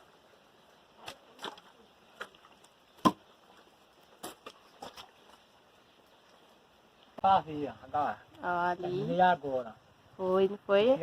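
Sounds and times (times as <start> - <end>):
firewood knocking together: 3.0 - 3.3.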